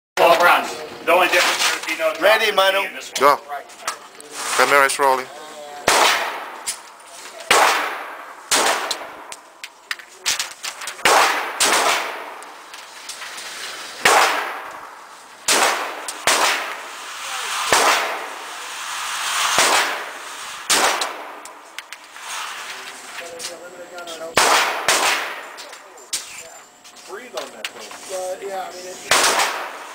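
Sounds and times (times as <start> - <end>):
pistol shots echoing: 5.8 - 6.7, 7.5 - 9.4, 11.0 - 12.4, 14.0 - 16.9, 17.7 - 18.5, 19.6 - 21.6, 24.4 - 25.6, 29.1 - 29.9.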